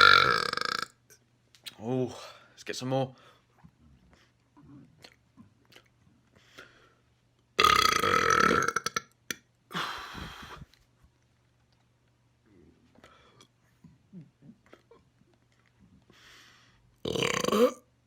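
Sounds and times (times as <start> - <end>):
man burping loudly: 0.0 - 1.0, 7.6 - 9.1, 17.0 - 17.9
quiet hissy sound: 1.0 - 7.6, 8.8 - 17.0.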